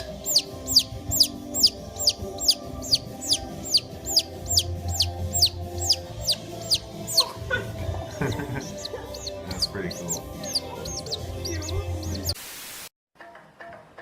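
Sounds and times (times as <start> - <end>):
background music: 0.0 - 12.4
bird chirping: 0.0 - 12.4.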